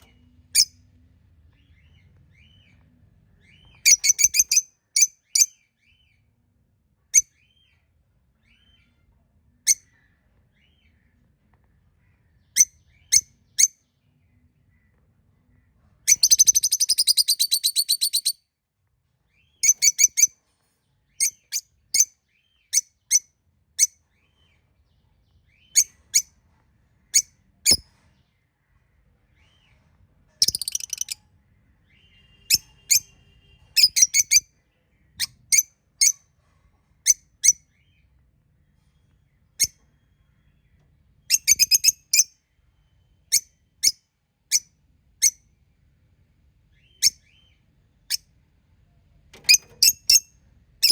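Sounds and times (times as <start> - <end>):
budgerigars chirping: 3.6 - 4.6, 16.1 - 18.3, 30.4 - 31.2.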